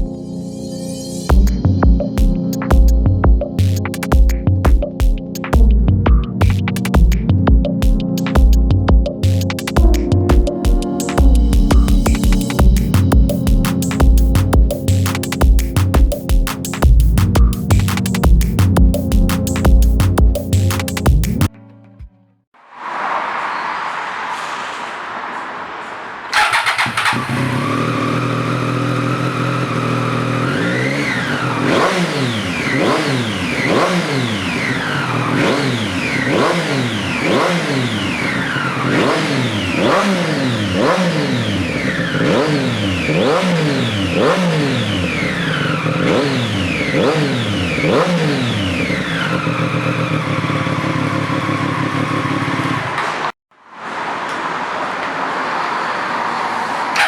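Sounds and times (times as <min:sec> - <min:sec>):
motorcycle engine revving: 0:26.3 - 0:53.4, 0:55.8 - 0:57.0.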